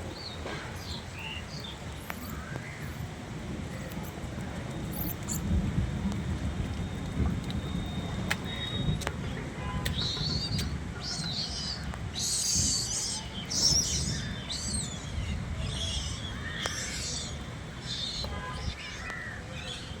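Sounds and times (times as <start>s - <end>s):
steady low rumble: 0.0s - 18.8s
birds chirping and whistling: 9.9s - 20.0s.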